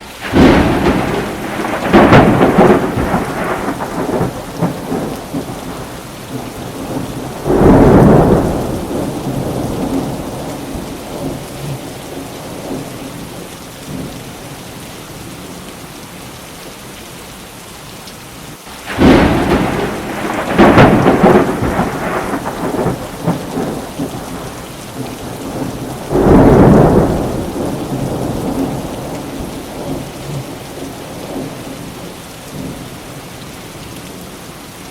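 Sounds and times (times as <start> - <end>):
steady rain falling: 0.0 - 34.9
thunder rolling: 0.2 - 12.9, 18.8 - 31.8.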